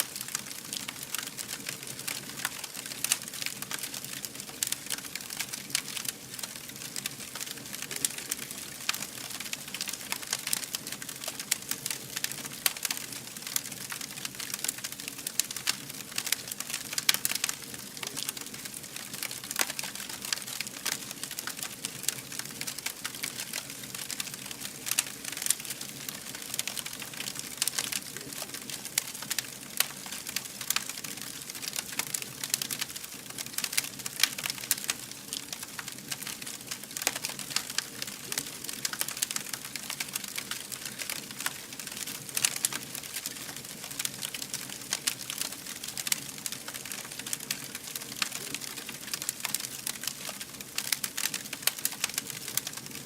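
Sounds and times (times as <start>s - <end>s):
wood fire crackling: 0.0s - 53.0s.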